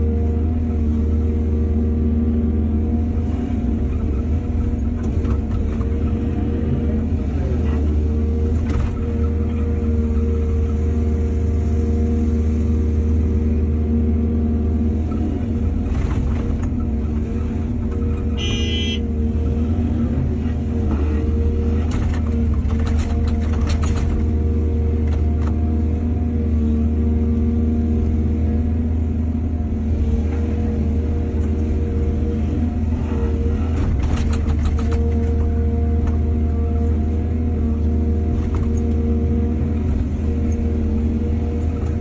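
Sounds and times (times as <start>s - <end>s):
excavator diesel engine running: 0.0s - 42.0s.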